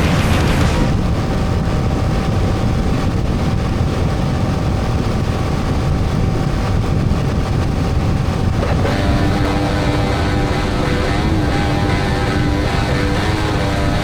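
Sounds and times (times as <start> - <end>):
wind and road noise: 0.0 - 14.0
motorcycle engine running: 8.5 - 14.0.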